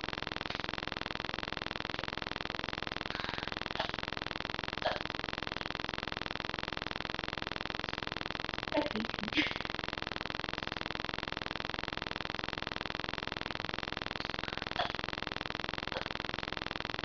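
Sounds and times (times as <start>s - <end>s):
steady electrical buzz: 0.0s - 17.0s.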